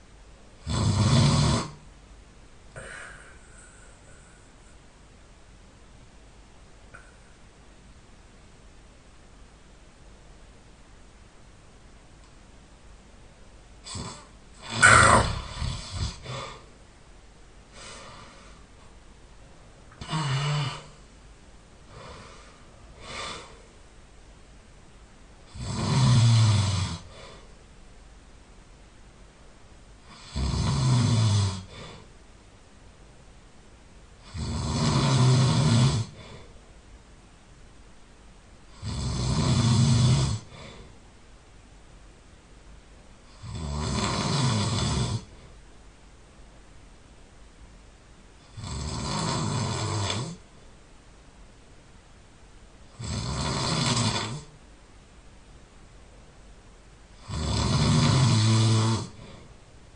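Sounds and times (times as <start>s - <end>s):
person snoring loudly: 0.6s - 1.8s, 13.8s - 16.6s, 20.0s - 21.0s, 25.5s - 27.4s, 30.0s - 32.1s, 34.2s - 36.4s, 38.7s - 40.8s, 43.3s - 45.3s, 48.4s - 50.4s, 52.9s - 54.5s, 57.2s - 59.5s.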